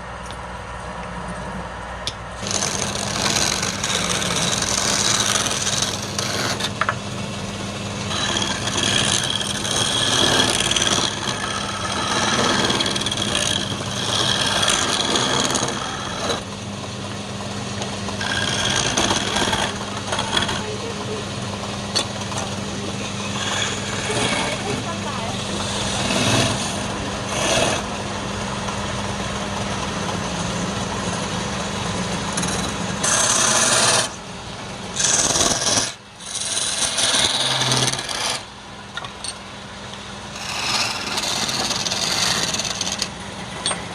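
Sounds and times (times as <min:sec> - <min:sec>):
lathe motor hum: 0:01.7 - 0:43.9
tool scraping spinning wood: 0:02.4 - 0:43.9.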